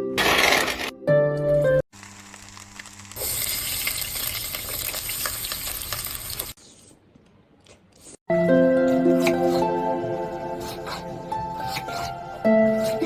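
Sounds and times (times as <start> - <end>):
food sizzling in a pan: 1.9 - 6.6.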